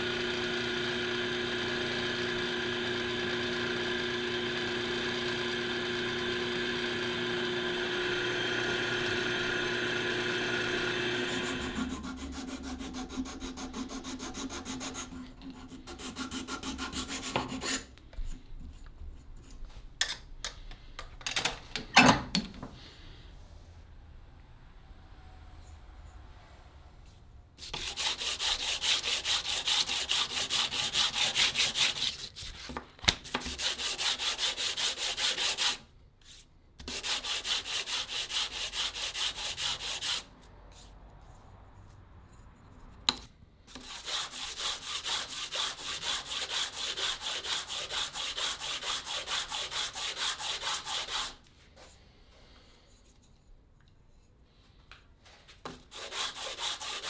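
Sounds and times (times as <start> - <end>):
sandpaper rubbing on wood: 27.6 - 32.7, 33.5 - 40.9, 43.7 - 51.4, 55.9 - 57.0.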